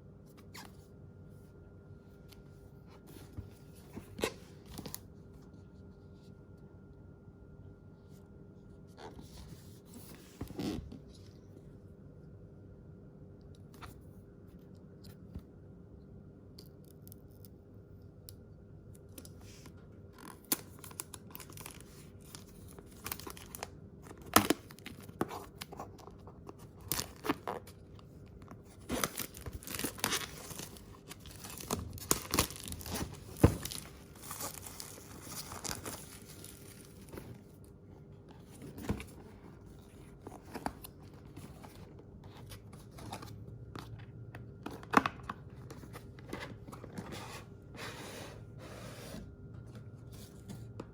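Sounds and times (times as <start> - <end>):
packaging tearing and crinkling: 28.9 - 37.1.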